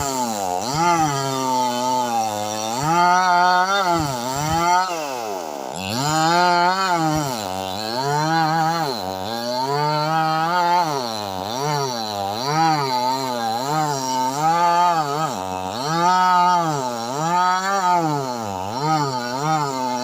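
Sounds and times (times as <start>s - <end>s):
chainsaw cutting hard wood: 0.0s - 20.0s.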